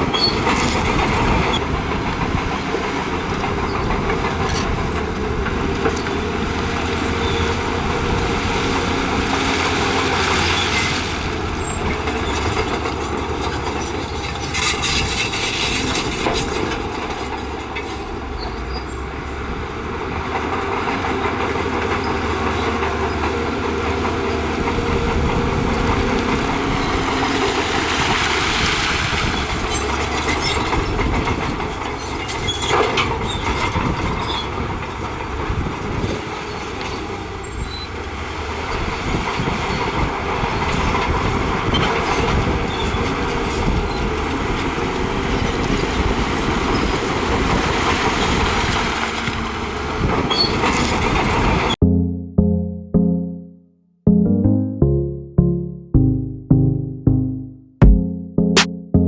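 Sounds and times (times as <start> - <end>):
steel tracks clattering: 0.0 - 28.4
bulldozer diesel engine under load: 0.0 - 51.7.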